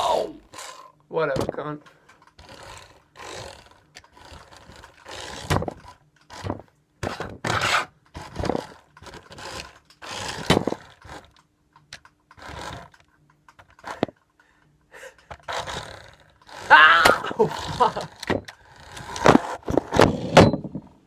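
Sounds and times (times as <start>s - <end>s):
toy car wheels scraping floor: 0.0s - 1.0s, 1.9s - 11.4s, 12.0s - 14.4s, 15.1s - 20.9s
toy car knocking into things: 4.0s - 11.3s, 15.2s - 20.9s.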